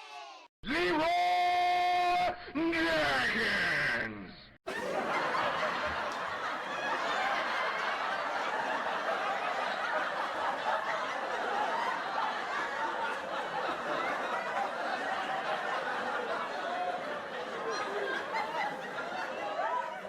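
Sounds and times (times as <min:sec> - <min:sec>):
audience laughing: 0:04.7 - 0:20.0.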